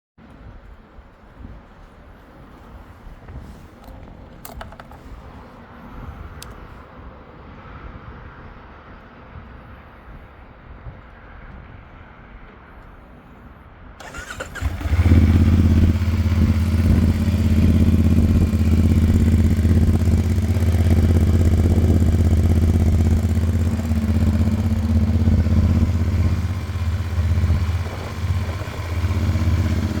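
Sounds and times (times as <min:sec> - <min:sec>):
motorcycle starter cranking: 0:14.0 - 0:17.9
motorcycle engine idling: 0:14.0 - 0:30.0.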